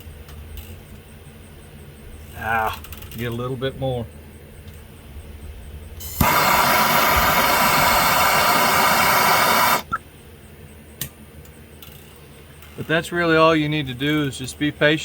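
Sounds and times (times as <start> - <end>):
heating tool hissing: 6.0 - 10.0.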